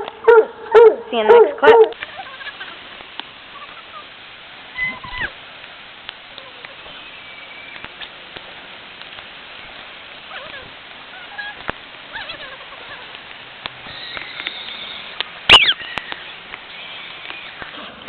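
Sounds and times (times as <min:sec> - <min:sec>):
rain hissing: 0:00.0 - 0:18.0
dog yelping: 0:00.2 - 0:02.0, 0:15.5 - 0:16.0
dog whining: 0:15.5 - 0:15.9.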